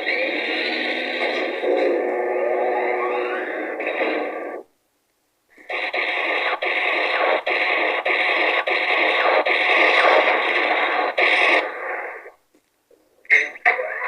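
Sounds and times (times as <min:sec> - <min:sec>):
rushing electronic noise: 0:00.0 - 0:04.7, 0:05.7 - 0:12.2.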